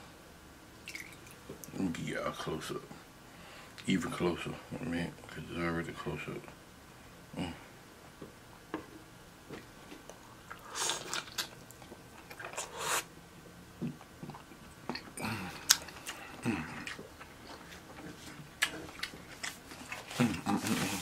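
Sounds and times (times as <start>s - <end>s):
person chewing and smacking: 9.5s - 13.0s, 13.8s - 21.0s.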